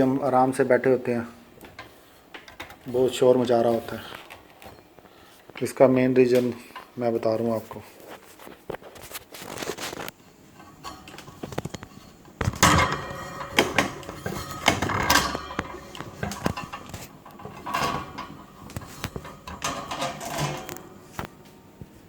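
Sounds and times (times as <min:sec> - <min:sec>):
metal fan parts knocking and scraping: 0:01.6 - 0:04.8, 0:08.0 - 0:21.5.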